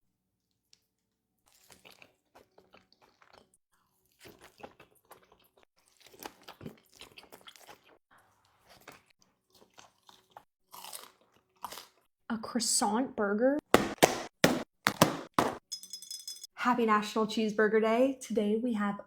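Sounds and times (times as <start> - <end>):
crunchy bites and chewing: 1.5 - 8.0, 8.6 - 12.1.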